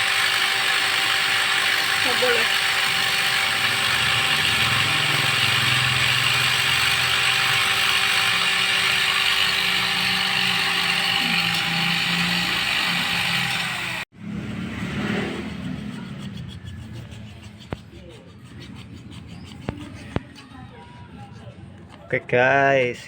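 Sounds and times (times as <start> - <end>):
rotary grinder grinding metal: 0.0 - 14.1.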